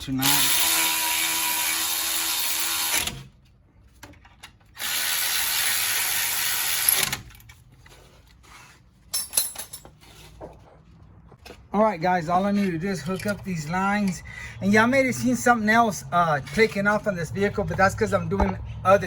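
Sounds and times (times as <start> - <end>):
power tool running: 0.2 - 3.3, 4.8 - 7.2.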